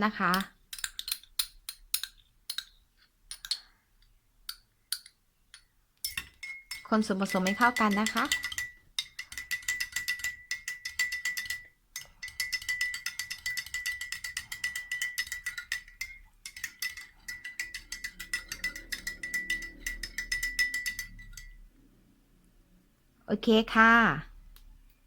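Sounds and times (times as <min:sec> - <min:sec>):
spoon clicking in glass: 0:04.5 - 0:21.6.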